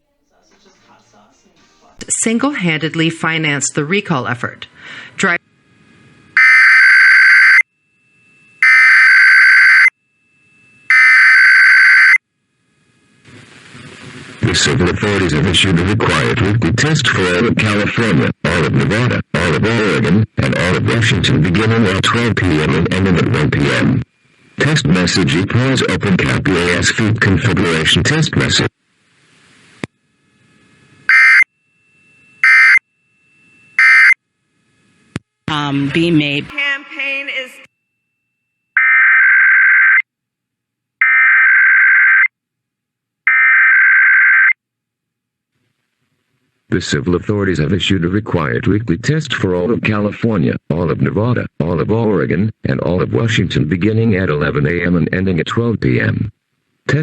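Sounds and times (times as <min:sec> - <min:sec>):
digital data tone bursts: 0:06.4 - 0:10.0, 0:10.8 - 0:12.2, 0:31.1 - 0:34.2.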